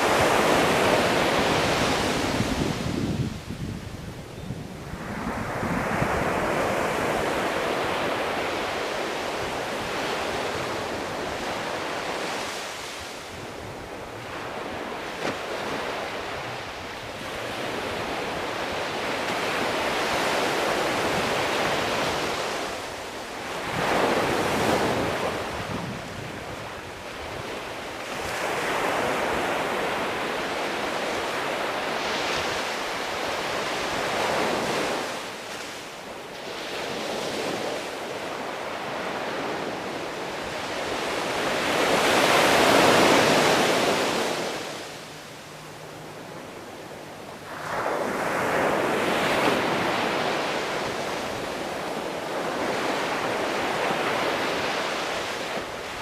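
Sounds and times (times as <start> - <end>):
sea waves washing onto shore: 0.0 - 4.1, 4.8 - 56.0.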